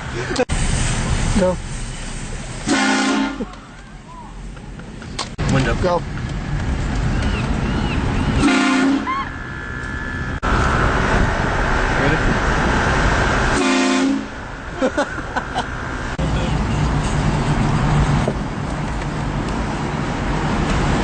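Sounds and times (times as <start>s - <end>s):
train horn blasting: 2.7s - 3.5s, 8.4s - 9.1s, 13.6s - 14.4s.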